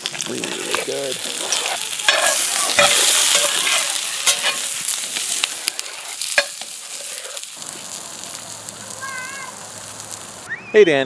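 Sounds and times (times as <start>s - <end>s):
utensil scraping a pan: 0.0s - 7.6s
food sizzling in a frying pan: 0.0s - 10.5s.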